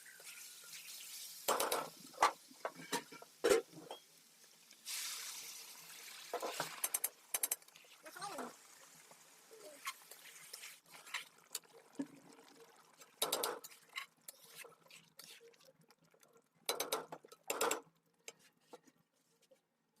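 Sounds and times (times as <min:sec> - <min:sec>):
utensils knocking and scraping pan: 0:01.5 - 0:03.7, 0:13.2 - 0:14.6.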